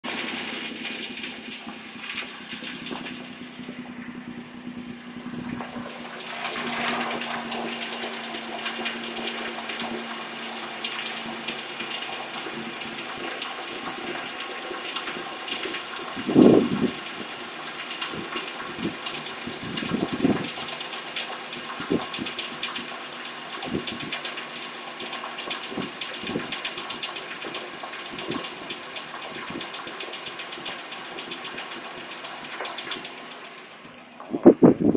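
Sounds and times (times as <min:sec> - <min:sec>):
engine thumps: 0:00.0 - 0:14.2
engine ticking and tapping: 0:00.0 - 0:34.9.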